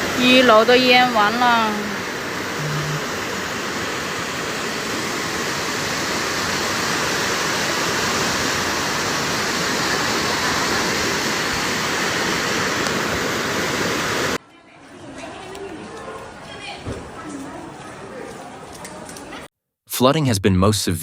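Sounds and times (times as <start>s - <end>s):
floodwater rushing: 0.0s - 14.4s.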